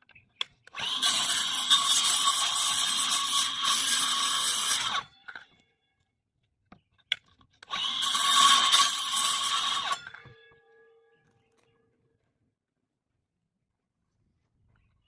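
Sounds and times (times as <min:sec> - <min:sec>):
power saw cutting plywood: 0:00.7 - 0:05.1, 0:07.6 - 0:10.3.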